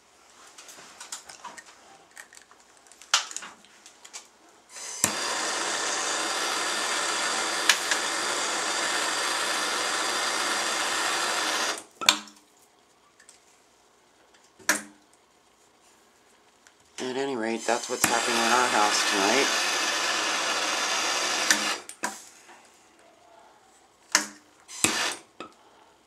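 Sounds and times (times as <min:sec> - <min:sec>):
soldering torch hissing: 0:04.7 - 0:11.9, 0:17.0 - 0:21.9, 0:24.7 - 0:25.3.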